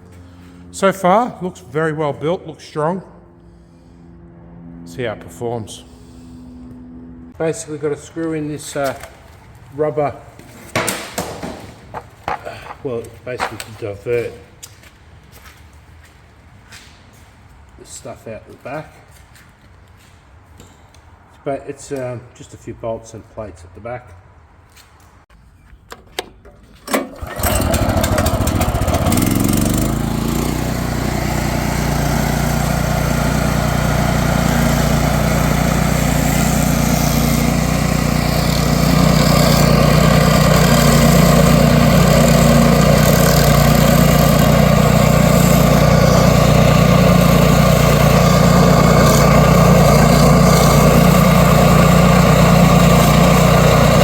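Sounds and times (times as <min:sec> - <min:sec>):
stump grinder engine running: 0:26.9 - 0:54.0.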